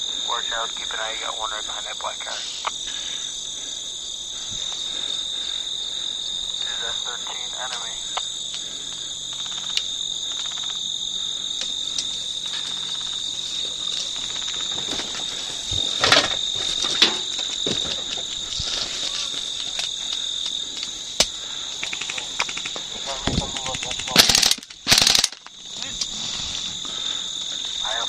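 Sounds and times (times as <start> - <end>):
insects chirping: 0.0 - 28.0.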